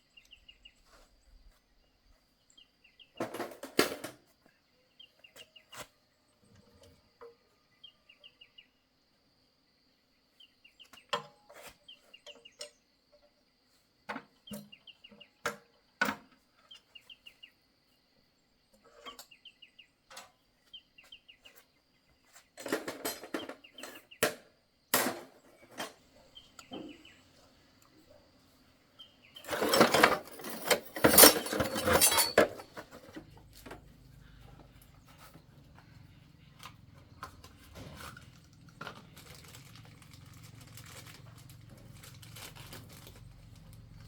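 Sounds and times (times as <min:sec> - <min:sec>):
hand tools clinking on metal: 0:22.6 - 0:24.0, 0:29.4 - 0:33.8
birds chirping: 0:25.4 - 0:39.3.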